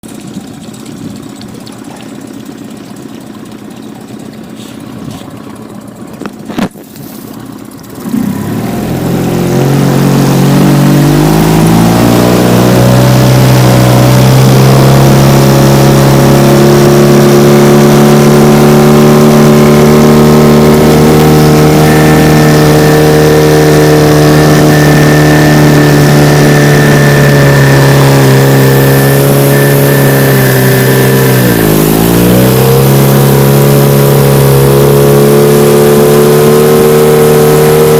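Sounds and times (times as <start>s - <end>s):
outboard motor running: 0.0s - 37.9s
high squeal: 20.7s - 33.7s.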